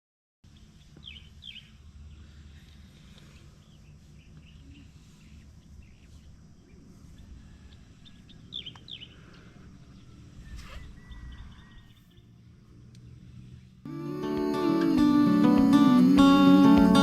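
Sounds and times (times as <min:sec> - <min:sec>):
birds chirping: 0:00.5 - 0:13.8.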